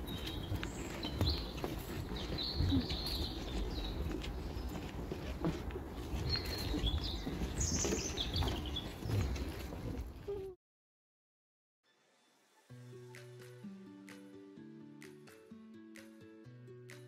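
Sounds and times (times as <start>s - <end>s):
small birds chirping: 0.0s - 10.5s.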